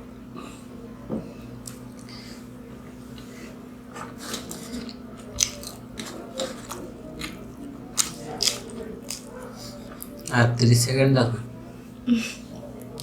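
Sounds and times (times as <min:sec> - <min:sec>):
faint steady hum: 0:00.0 - 0:13.0
chewing and biting food: 0:04.0 - 0:10.4.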